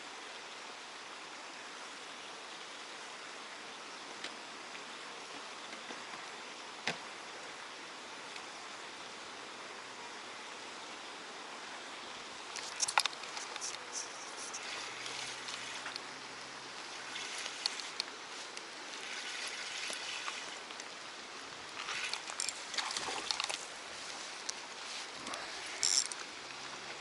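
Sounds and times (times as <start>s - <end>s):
steady outdoor hiss: 0.0s - 27.0s
water trickling and sloshing: 12.4s - 27.0s.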